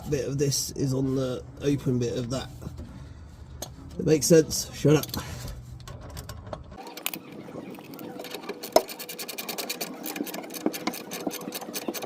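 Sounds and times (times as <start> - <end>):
metal clicks and scraping: 4.8 - 12.0.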